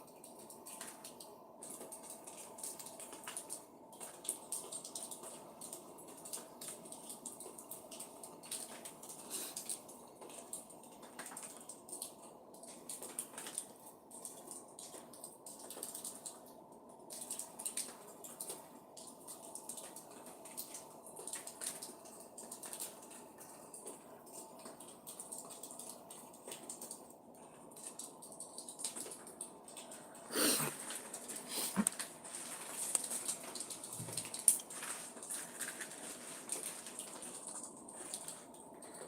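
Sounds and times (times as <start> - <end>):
clicks and rustles: 17.1 - 39.0.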